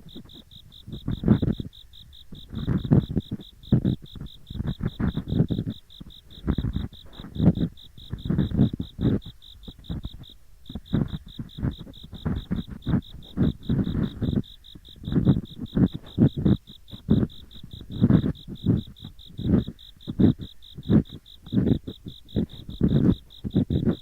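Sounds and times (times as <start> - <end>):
ear picks scratching microphone: 0.0 - 24.0
insect trilling: 0.0 - 24.0.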